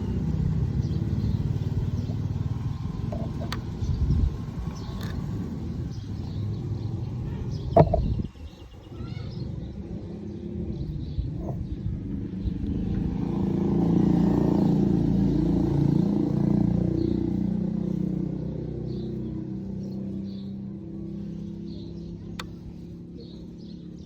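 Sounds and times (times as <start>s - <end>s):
vehicle engine passing by: 10.0s - 24.0s.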